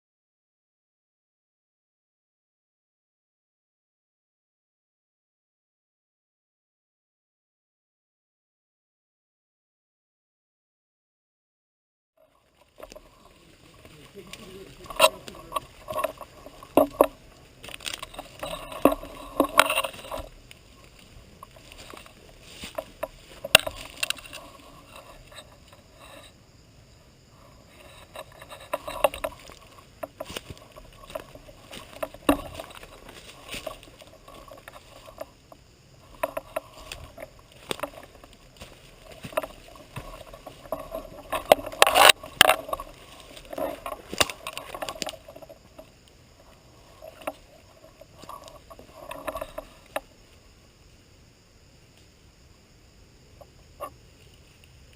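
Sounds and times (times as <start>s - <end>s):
rustling and crunching footsteps: 12.2s - 50.5s.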